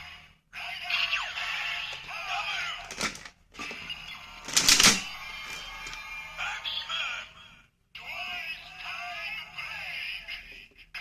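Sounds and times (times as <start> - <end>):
toy electronic sound effects: 0.6 - 2.9, 3.6 - 7.0.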